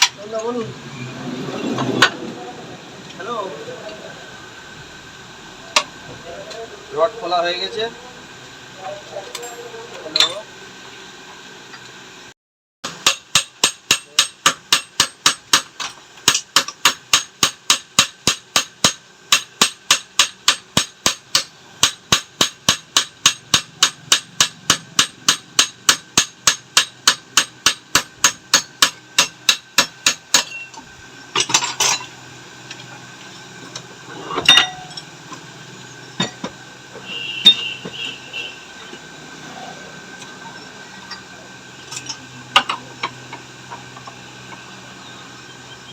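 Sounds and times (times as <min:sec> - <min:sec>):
hand hammer striking metal: 0:12.9 - 0:30.6, 0:34.5 - 0:34.9
metal clanks: 0:31.4 - 0:32.2, 0:34.3 - 0:35.1.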